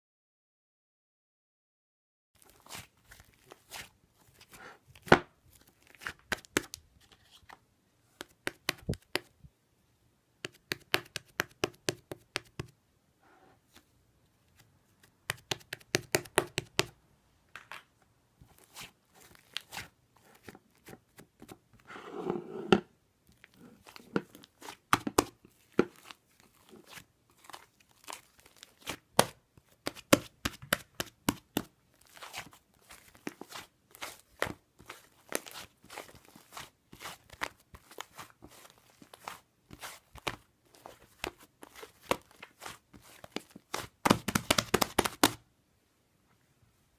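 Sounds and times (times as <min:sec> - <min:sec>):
slime squish: 0:23.3 - 0:45.2.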